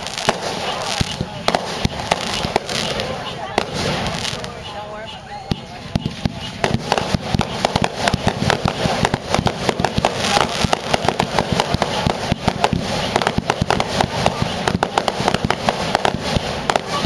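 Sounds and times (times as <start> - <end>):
firework bangs and crackles: 0.0 - 17.0.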